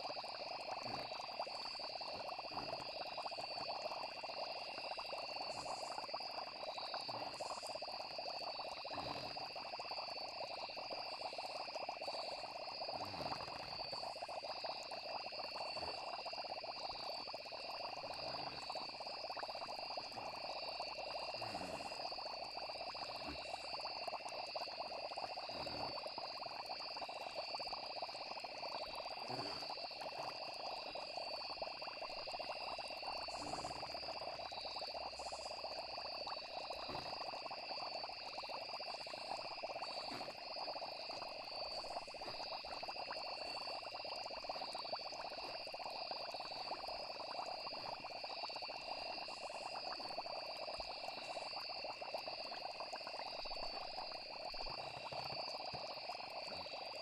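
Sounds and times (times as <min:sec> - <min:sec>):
frogs and insects trilling: 0:00.0 - 0:57.0
faint soft pops: 0:39.1 - 0:45.9.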